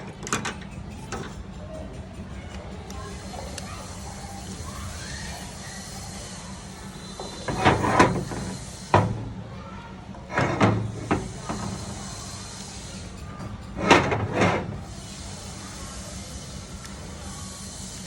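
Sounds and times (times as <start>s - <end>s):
short knocks and clatters: 10.3s - 12.0s.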